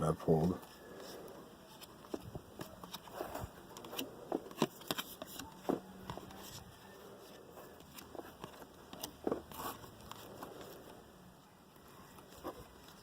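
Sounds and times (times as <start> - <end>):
cards clicking and rustling: 0.9 - 11.0.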